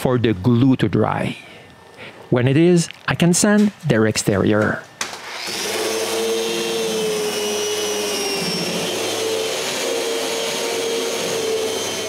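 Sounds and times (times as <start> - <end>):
electric sander whining: 5.1 - 12.0.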